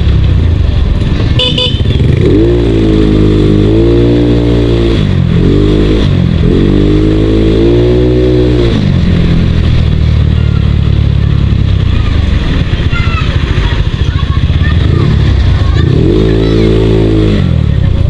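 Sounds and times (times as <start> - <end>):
motorcycle engine revving: 0.0 - 18.0
low rumble: 4.9 - 18.0.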